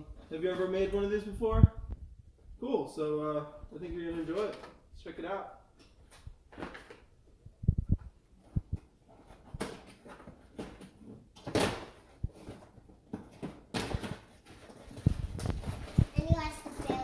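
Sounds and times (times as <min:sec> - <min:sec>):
packaging rustling and scraping: 0:08.6 - 0:17.0.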